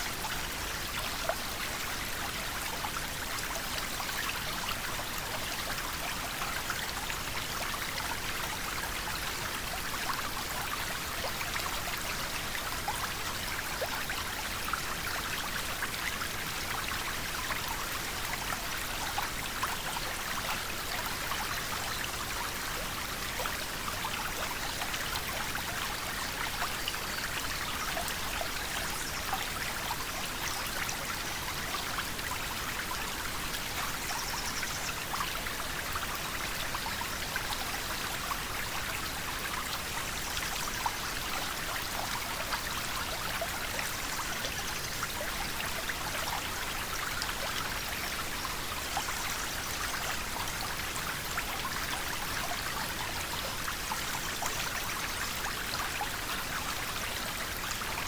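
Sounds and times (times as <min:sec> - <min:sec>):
river water rushing and babbling: 0:00.0 - 0:58.0.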